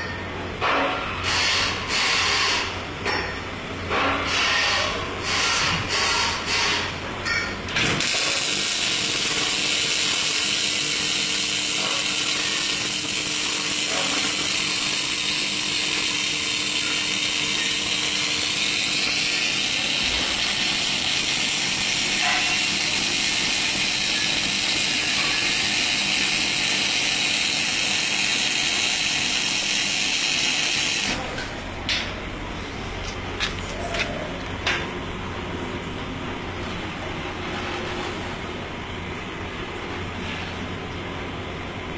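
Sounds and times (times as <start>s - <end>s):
welding arc burning: 7.8s - 31.4s.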